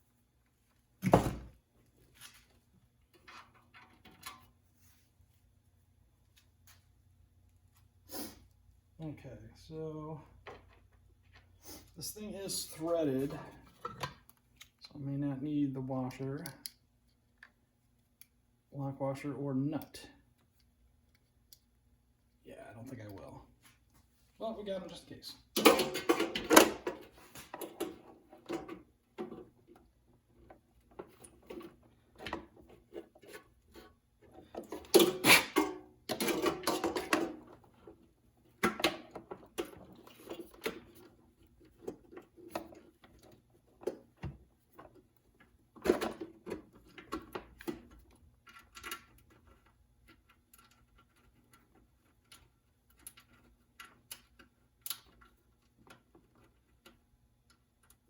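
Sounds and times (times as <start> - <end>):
hardware clicks and rattles: 25.5 - 29.8, 34.2 - 58.0
tools clattering: 34.3 - 37.7.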